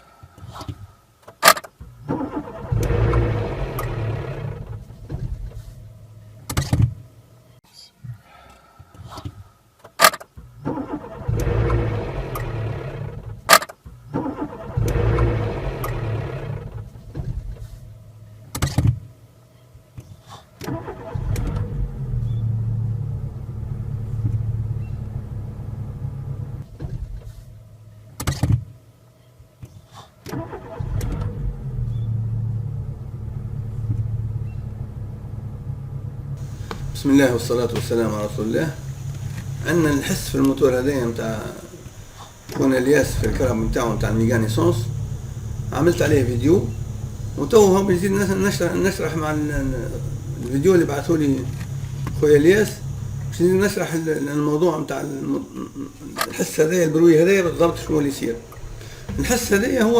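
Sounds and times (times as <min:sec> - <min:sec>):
car engine starting and running: 0:00.4 - 0:07.6, 0:09.3 - 0:29.0, 0:30.2 - 0:59.9
sharp click: 0:00.6 - 0:01.7, 0:09.9 - 0:10.3
engine knock: 0:36.4 - 0:53.7.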